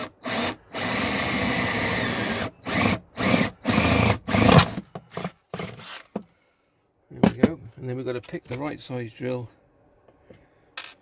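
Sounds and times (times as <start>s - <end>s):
electric drill drilling: 0.0s - 4.8s.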